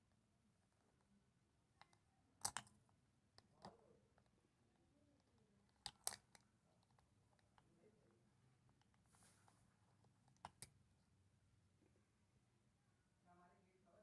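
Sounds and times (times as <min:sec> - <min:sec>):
clicks and taps of hard toy pieces: 0:01.8 - 0:02.8, 0:05.7 - 0:07.6, 0:10.3 - 0:10.7.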